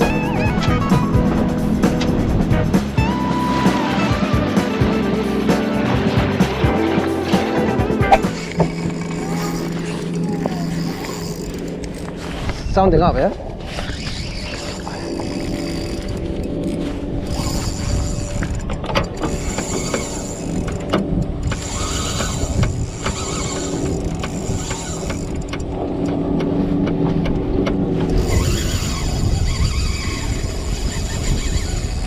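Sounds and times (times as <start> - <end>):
boat motor humming: 0.0 - 12.5, 13.9 - 32.0.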